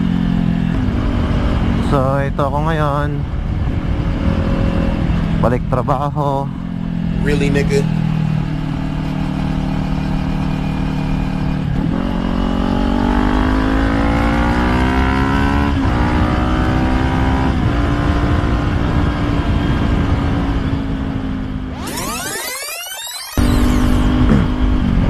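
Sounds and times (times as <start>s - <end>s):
motorcycle engine revving: 0.0s - 25.0s
wind rumble on microphone: 0.6s - 5.7s, 15.2s - 21.6s.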